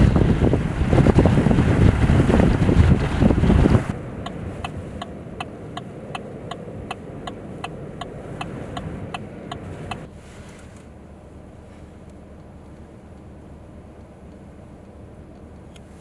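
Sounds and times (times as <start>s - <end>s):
wind noise on microphone: 0.0s - 10.1s
low engine rumble: 0.0s - 16.0s
car turn signal ticking: 3.2s - 10.2s, 10.8s - 16.0s.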